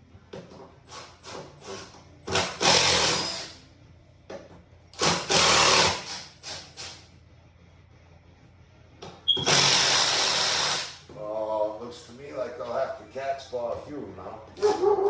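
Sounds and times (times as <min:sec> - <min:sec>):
power tool whirring: 0:00.9 - 0:03.6, 0:05.0 - 0:07.0, 0:09.3 - 0:11.0.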